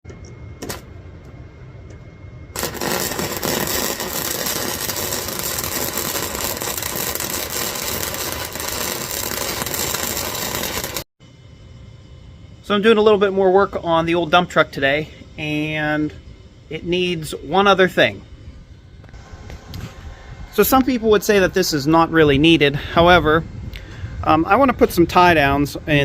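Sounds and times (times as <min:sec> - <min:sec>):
welder arc crackling: 0:02.5 - 0:11.1.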